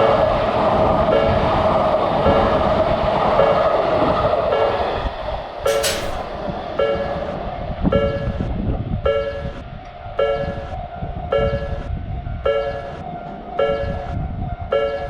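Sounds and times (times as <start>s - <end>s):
level-crossing warning bell: 0.0s - 11.8s, 12.4s - 15.0s
passing train: 0.0s - 15.0s.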